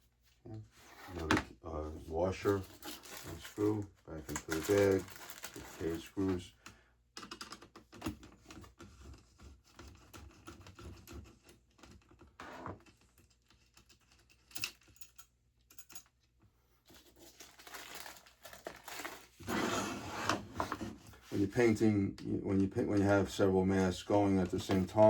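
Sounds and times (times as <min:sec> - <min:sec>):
plastic bag rustling: 0:02.4 - 0:06.2, 0:17.1 - 0:19.6.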